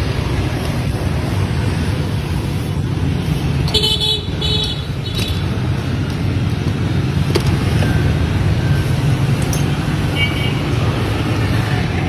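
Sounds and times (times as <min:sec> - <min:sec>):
road traffic rumble: 0:00.0 - 0:12.0
vehicle horn beeps: 0:03.7 - 0:05.4, 0:10.1 - 0:10.7.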